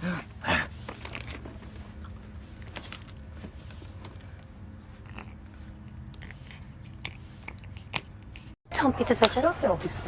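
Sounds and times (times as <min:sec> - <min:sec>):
animal chewing: 0:00.9 - 0:08.6.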